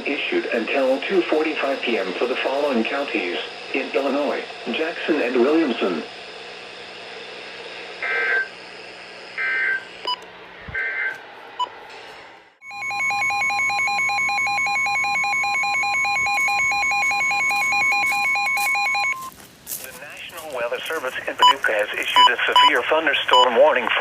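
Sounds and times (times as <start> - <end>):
rapidly pulsing electronic beep: 0.1 - 5.8, 12.6 - 19.3, 21.3 - 23.7
warbling data tone bursts: 12.6 - 19.4.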